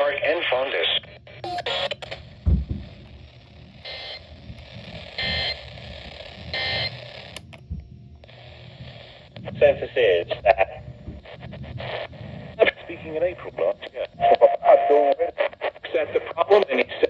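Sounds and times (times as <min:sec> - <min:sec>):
radio hiss: 0:00.0 - 0:07.6, 0:08.2 - 0:17.0
emergency alert data tones: 0:01.3 - 0:10.1
low thump: 0:02.4 - 0:02.9.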